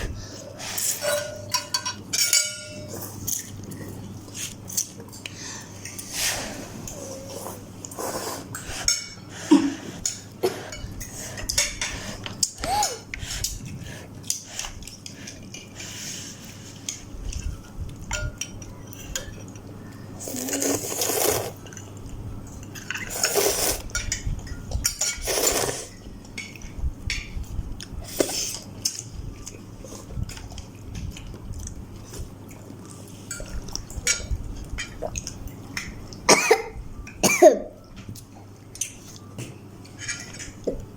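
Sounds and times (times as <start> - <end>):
spoon clinking against bowl: 1.0 - 2.9.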